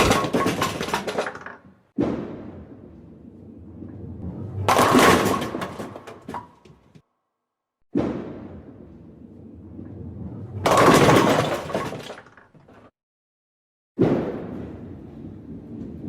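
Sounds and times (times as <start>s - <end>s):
bowling pins clattering: 0.0s - 1.8s, 3.9s - 7.0s, 10.5s - 12.9s
bowling ball rolling rumble: 2.4s - 6.9s, 8.4s - 12.4s.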